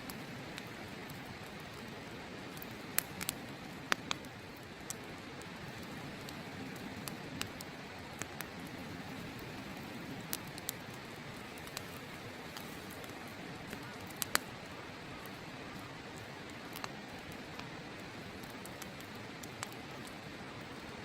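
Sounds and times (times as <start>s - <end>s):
wood fire crackling and popping: 0.0s - 21.0s.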